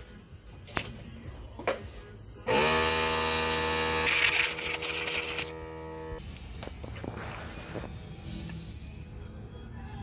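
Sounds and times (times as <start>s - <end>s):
small electric motor buzzing: 2.5s - 6.2s.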